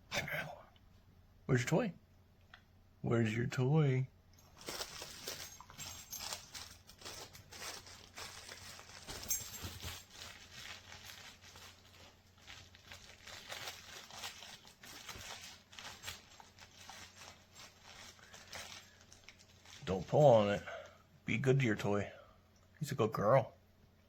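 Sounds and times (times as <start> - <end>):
dog chewing crinkly toy: 4.4 - 20.6.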